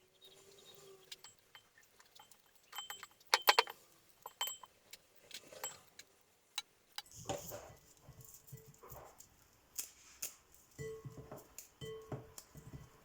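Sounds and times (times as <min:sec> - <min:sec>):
small hard objects clinking: 0:01.0 - 0:06.0.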